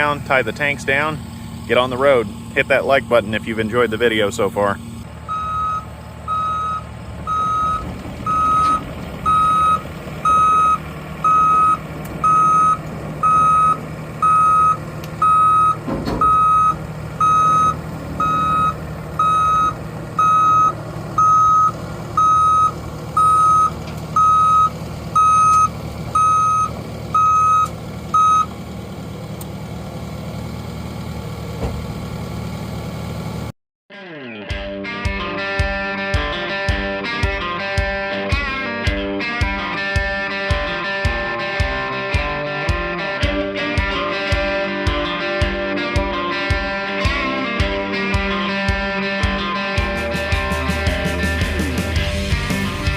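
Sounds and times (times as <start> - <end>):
engine running: 0.0 - 33.5, 34.8 - 52.9
backup alarm beeping: 1.6 - 28.5.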